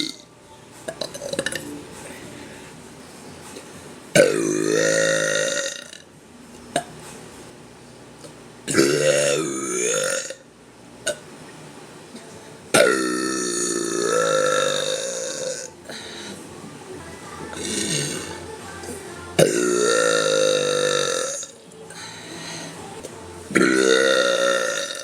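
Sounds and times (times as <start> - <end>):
woman burping: 4.2 - 6.0, 8.7 - 10.4, 12.8 - 16.0, 17.5 - 18.3, 19.4 - 21.5, 23.5 - 25.0.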